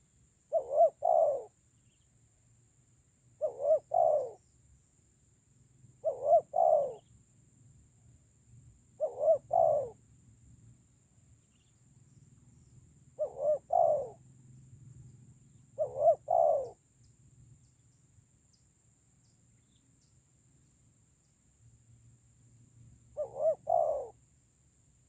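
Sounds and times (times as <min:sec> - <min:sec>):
dove cooing: 0:00.0 - 0:01.6, 0:03.4 - 0:04.4, 0:06.0 - 0:07.1, 0:09.0 - 0:10.0, 0:13.2 - 0:14.2, 0:15.8 - 0:16.8, 0:23.1 - 0:24.2.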